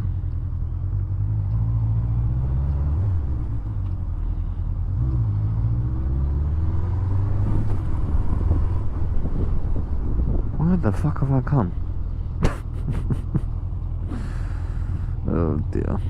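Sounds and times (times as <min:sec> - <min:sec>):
wind noise: 0:07.2 - 0:13.4.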